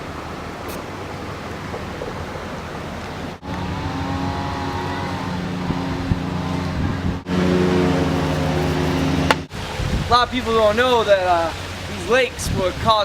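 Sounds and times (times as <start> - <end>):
vehicle engine running: 3.4 - 9.5.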